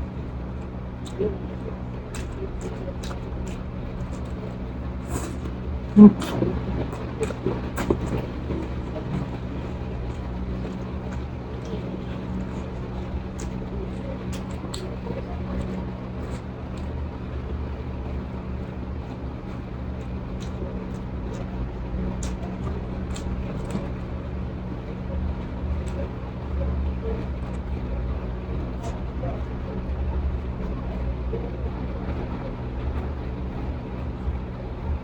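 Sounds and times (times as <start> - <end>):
low mechanical hum: 0.0 - 35.0
person eating and chewing: 2.1 - 14.9.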